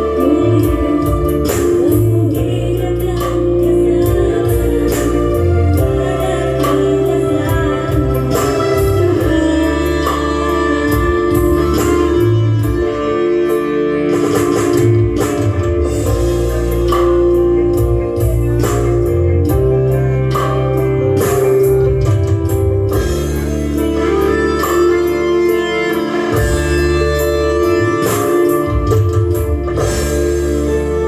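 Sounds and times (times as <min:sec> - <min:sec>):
electronic keyboard music with drums: 0:00.0 - 0:31.0.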